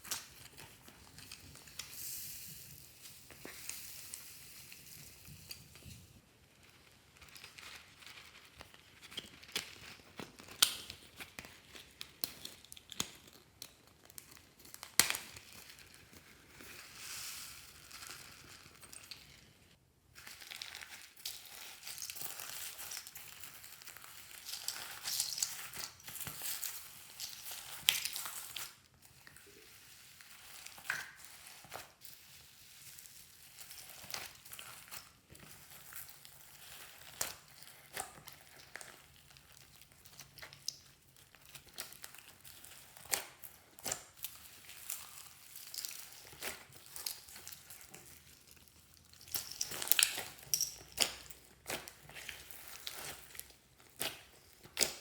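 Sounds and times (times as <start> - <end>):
crinkling: 3.1 - 55.0
hands squishing slime: 20.2 - 55.0.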